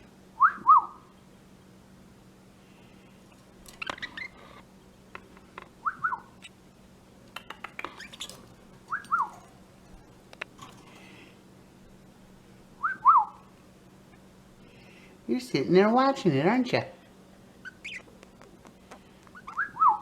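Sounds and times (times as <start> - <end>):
bird chirping: 3.7 - 4.8, 5.8 - 6.6, 7.4 - 10.1, 17.6 - 18.5, 19.3 - 20.0
sharp bird chips: 7.4 - 11.2.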